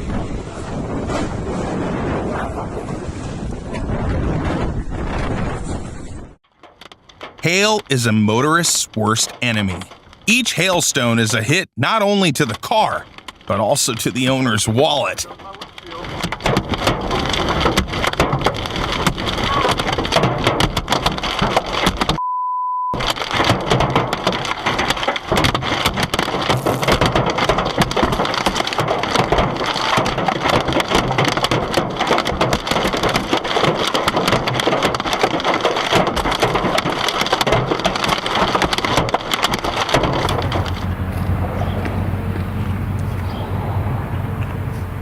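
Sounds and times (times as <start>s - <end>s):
hail clattering on a car: 15.2s - 22.2s, 23.0s - 42.8s
short beep: 22.2s - 23.0s.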